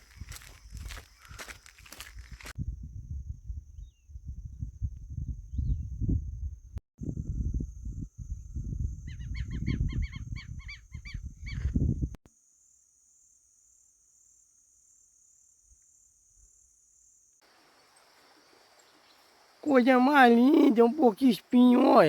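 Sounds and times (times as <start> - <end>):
high-pitched insect whine: 0.0 - 2.5
wind rumble on microphone: 0.0 - 12.2.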